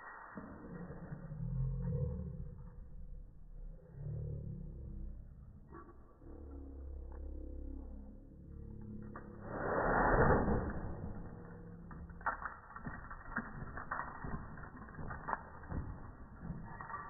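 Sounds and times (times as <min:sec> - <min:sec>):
drawn-out rush of noise: 0:09.4 - 0:10.7.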